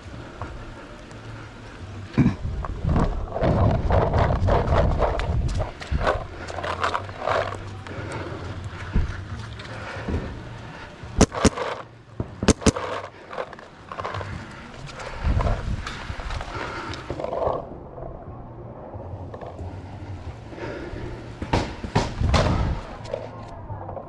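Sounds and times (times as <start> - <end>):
paintball markers firing: 11.2 - 14.6.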